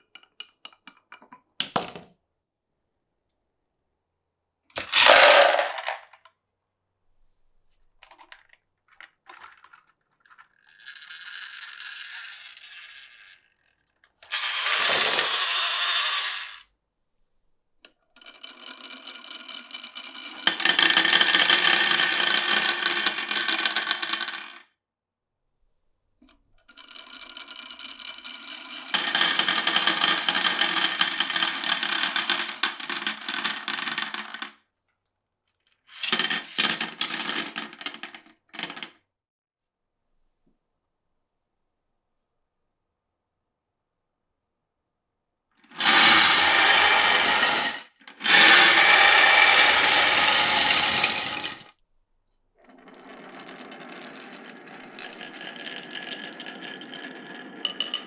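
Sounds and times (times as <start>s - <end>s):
marbles rolling and clattering: 4.8s - 6.2s, 8.0s - 16.6s, 18.2s - 24.6s, 26.7s - 34.6s, 36.0s - 39.0s, 45.7s - 51.7s, 52.6s - 58.0s.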